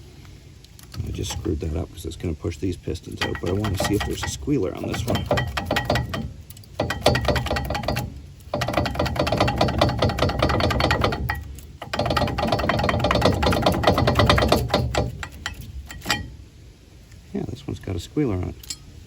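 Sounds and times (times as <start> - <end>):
metallic rattling and clicking: 0.7 - 1.7, 3.0 - 16.6, 18.5 - 18.9.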